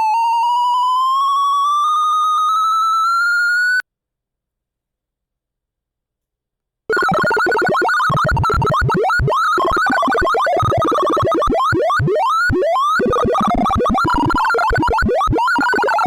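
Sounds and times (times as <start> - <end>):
rising pitch sweeps: 6.9 - 16.0
stream of synthesized beeps: 6.9 - 16.0.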